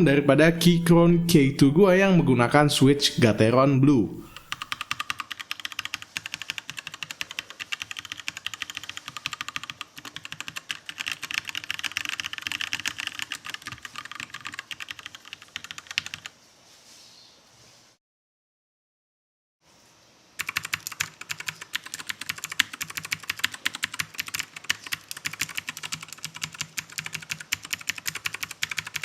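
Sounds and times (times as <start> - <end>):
fast typing on mechanical keyboard: 4.4 - 16.4, 20.4 - 29.0
faint hiss: 19.6 - 20.4.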